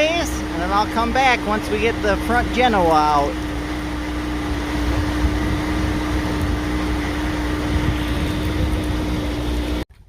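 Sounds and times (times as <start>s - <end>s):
outboard motor humming: 0.0s - 10.0s
rushing noise: 3.4s - 9.8s.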